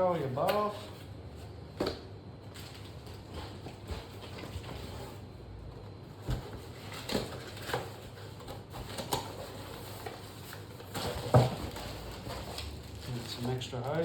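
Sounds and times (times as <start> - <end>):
packaging rustling: 6.6 - 14.0.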